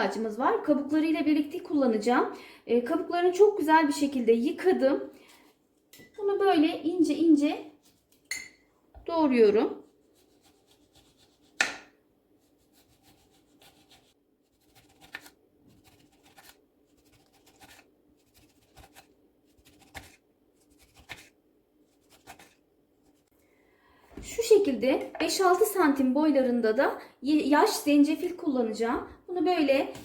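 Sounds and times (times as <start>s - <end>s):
knife slicing lemon: 12.7s - 22.6s.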